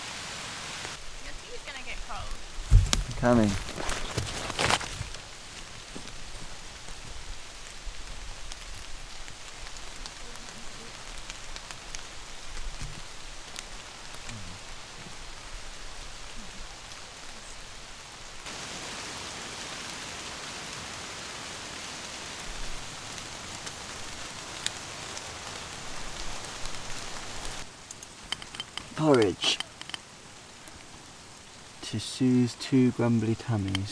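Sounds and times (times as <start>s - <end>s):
rain falling: 0.0s - 33.9s
sharp drips: 26.0s - 33.9s.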